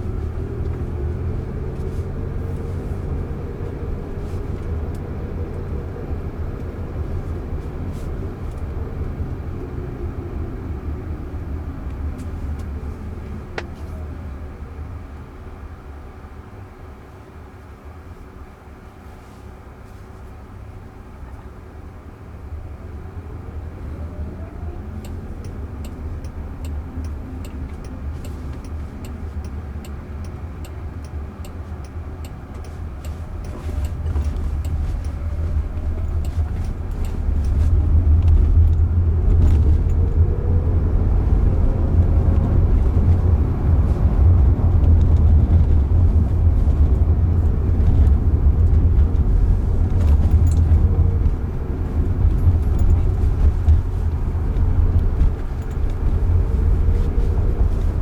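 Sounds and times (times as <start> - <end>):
road and tyre rumble in car: 0.0 - 58.0
regular ticking: 25.0 - 40.0.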